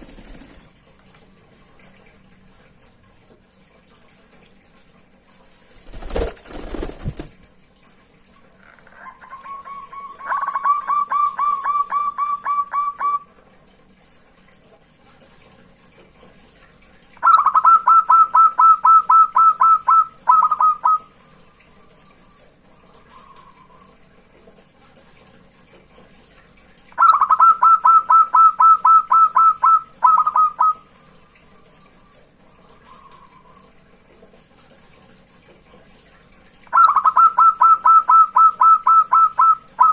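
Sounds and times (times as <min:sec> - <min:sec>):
dove cooing: 0:08.7 - 0:13.3, 0:17.2 - 0:21.1, 0:27.0 - 0:30.8, 0:36.7 - 0:39.9.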